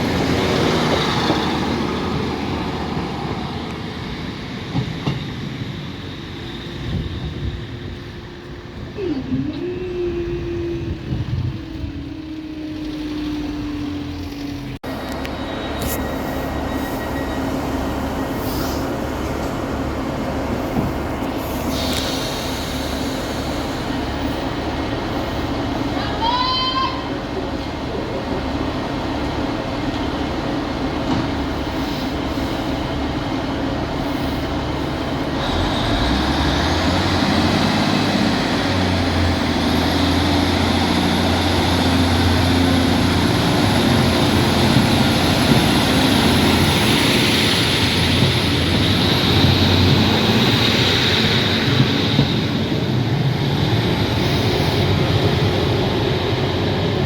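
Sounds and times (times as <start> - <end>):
train rumbling on rails: 0.0 - 57.0
low drone: 6.1 - 25.8.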